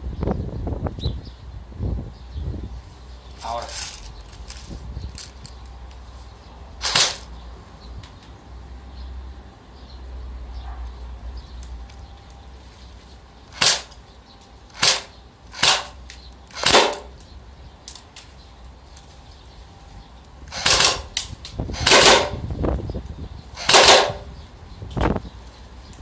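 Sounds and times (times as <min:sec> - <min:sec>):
airsoft gun shots: 0:06.8 - 0:07.3, 0:13.6 - 0:14.0, 0:14.8 - 0:17.2, 0:20.5 - 0:21.1, 0:21.7 - 0:22.4, 0:23.6 - 0:24.3.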